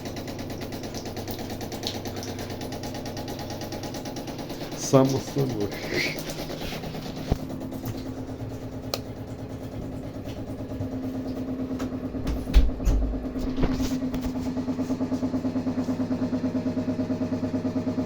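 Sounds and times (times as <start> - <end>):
water pipes humming: 0.0 - 18.0.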